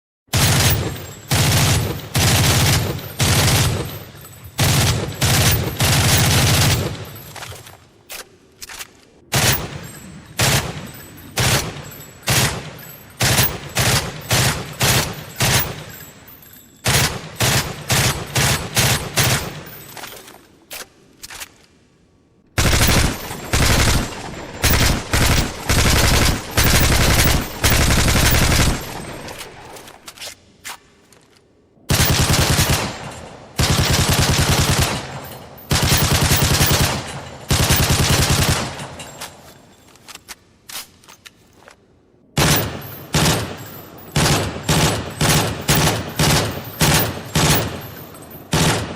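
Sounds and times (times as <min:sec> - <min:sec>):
automatic gunfire bursts: 0:00.3 - 0:03.9, 0:04.6 - 0:07.0, 0:22.6 - 0:29.6, 0:33.6 - 0:38.7, 0:42.4 - 0:47.8.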